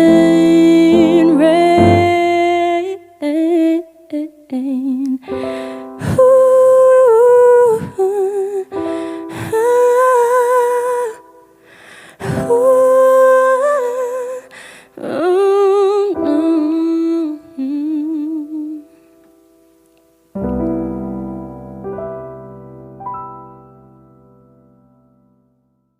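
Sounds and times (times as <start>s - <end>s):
sustained piano chords: 0.0s - 2.9s
man singing with vibrato: 0.0s - 3.0s.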